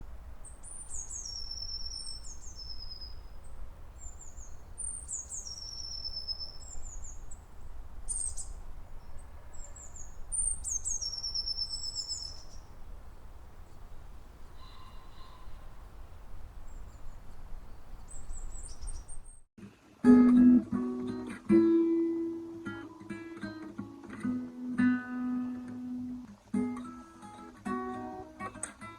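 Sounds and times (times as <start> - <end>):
steady low rumble: 0.0 - 19.4
songbird whistling: 0.4 - 19.4.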